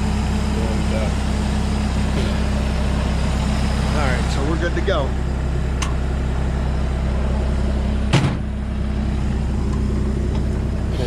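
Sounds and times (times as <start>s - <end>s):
diesel engine idling: 0.0s - 11.0s.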